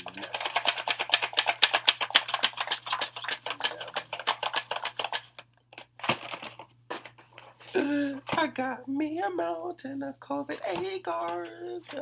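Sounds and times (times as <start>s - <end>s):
fingers tapping cardboard cards: 0.0s - 6.6s.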